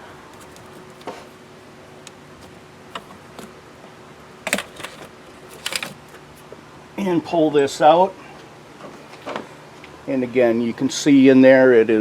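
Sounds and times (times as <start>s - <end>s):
plastic fitting clicking and rattling: 2.9s - 3.5s, 4.5s - 6.0s.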